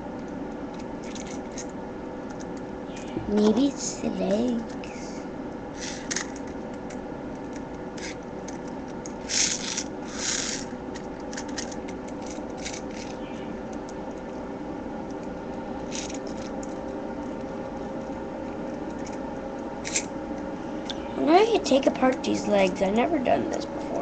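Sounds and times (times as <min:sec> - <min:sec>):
steady low hum: 0:00.0 - 0:24.0
plastic toy scraping and clicking: 0:05.8 - 0:06.6, 0:07.5 - 0:13.2, 0:15.9 - 0:16.5, 0:19.8 - 0:20.1.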